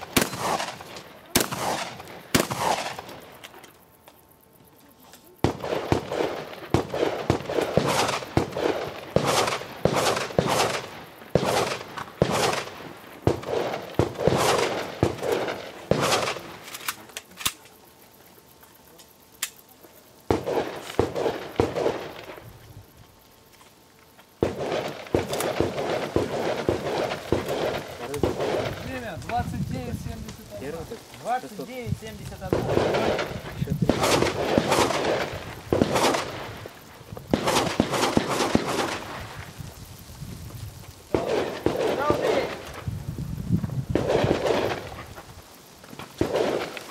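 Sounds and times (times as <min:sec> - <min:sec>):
shotgun shots echoing: 0:00.0 - 0:03.2, 0:05.4 - 0:16.7, 0:32.5 - 0:36.4, 0:37.3 - 0:39.1.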